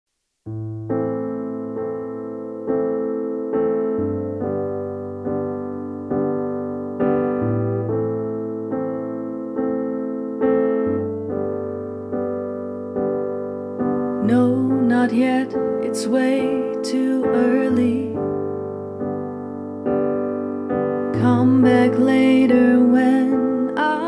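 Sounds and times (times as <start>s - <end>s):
keyboard chords: 0.4s - 24.0s.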